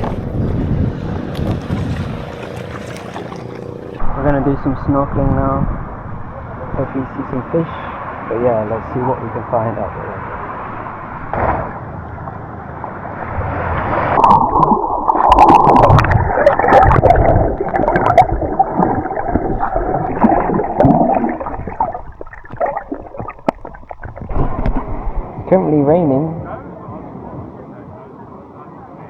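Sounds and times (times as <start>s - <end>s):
sea water sloshing and gurgling: 0.0s - 26.5s
water splashes: 0.0s - 27.0s
bubbling: 1.7s - 4.1s, 10.9s - 25.5s.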